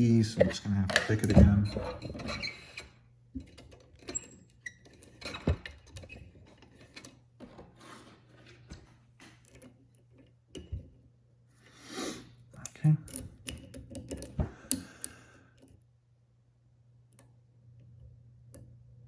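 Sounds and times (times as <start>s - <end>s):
lock pick clicking and scraping: 13.0s - 15.2s.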